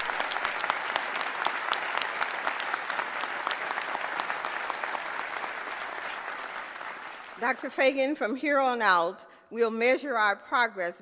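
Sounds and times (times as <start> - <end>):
audience applauding: 0.0 - 7.8.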